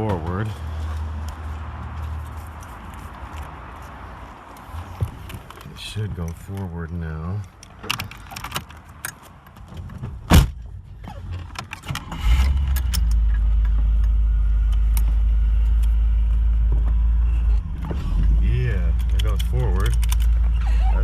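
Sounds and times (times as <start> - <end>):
car engine low rumble: 0.0 - 21.0
gear shifter clicks and clunk: 4.8 - 21.0.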